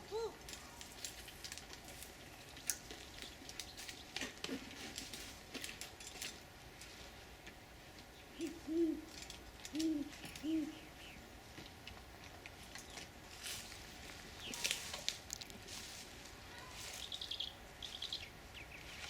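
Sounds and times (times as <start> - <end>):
faint clicks and rustles: 0.4 - 8.1, 11.5 - 17.2
owl hooting: 8.3 - 11.2.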